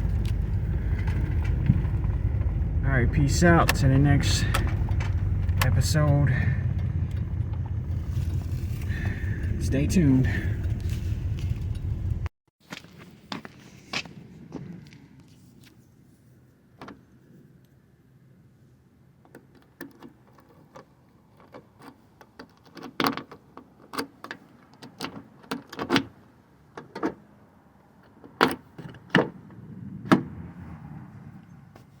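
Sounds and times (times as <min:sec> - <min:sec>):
clicks and knocks of handling: 0:19.2 - 0:26.1.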